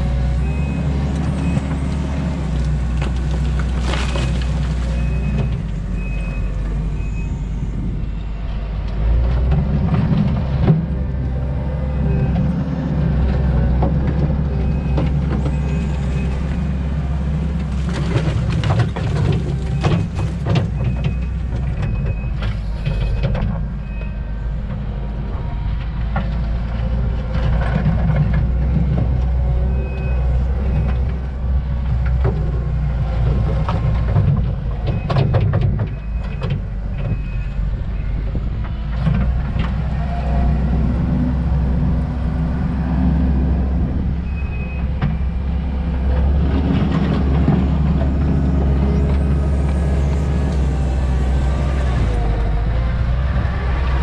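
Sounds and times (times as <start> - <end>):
diesel engine working under load: 0.0 - 54.0
bucket knocking and scraping rocks: 17.7 - 21.0.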